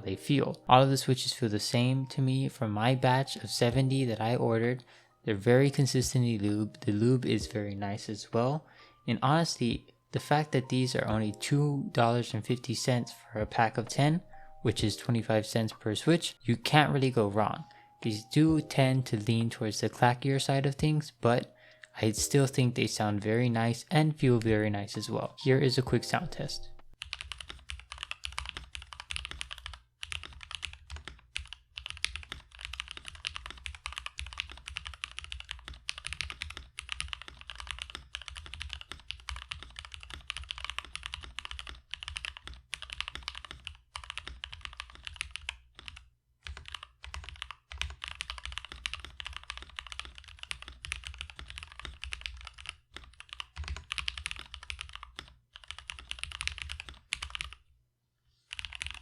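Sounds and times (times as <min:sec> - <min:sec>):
mechanical keyboard typing: 0:24.3 - 0:57.6, 0:58.5 - 0:59.0.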